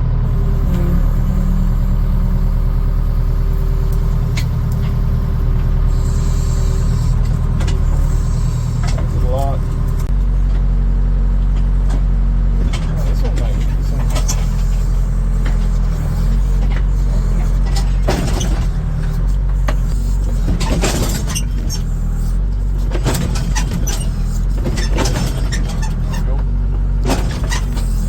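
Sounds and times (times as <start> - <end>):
diesel engine running: 0.0 - 28.0
clanks and knocks: 4.3 - 10.7, 11.4 - 22.0, 22.8 - 28.0.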